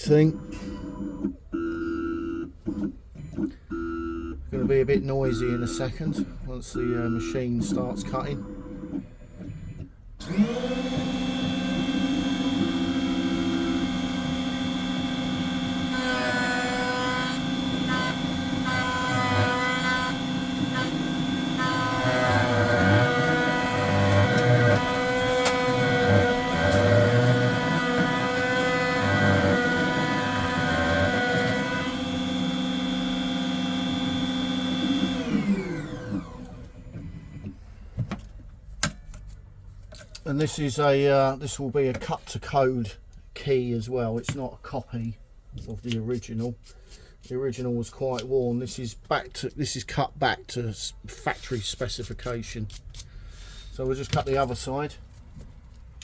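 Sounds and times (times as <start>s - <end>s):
key-cutting machine motor whine: 10.2s - 37.4s.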